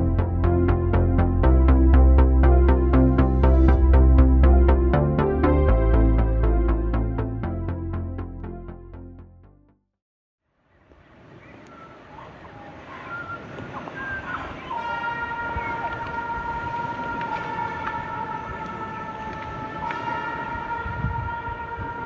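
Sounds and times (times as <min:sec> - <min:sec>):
outdoor background noise: 0:10.4 - 0:22.0.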